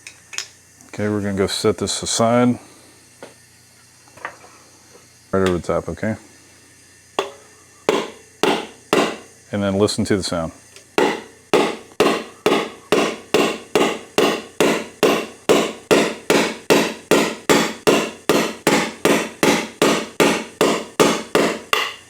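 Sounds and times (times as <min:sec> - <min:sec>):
hammer tapping on metal tool: 0:07.2 - 0:09.3, 0:11.0 - 0:22.0.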